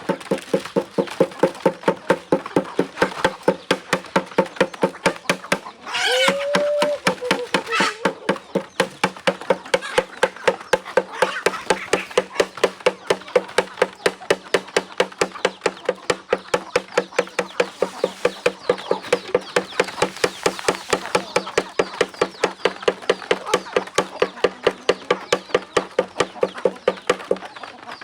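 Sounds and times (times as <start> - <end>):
rapid steady tapping: 0.0 - 5.8, 6.4 - 27.5
faint bird calls: 1.0 - 28.0.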